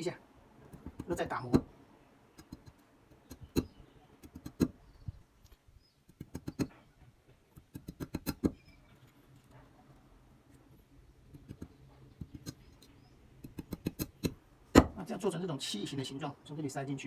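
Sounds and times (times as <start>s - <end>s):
blade cutting bamboo sticks: 6.1s - 6.8s.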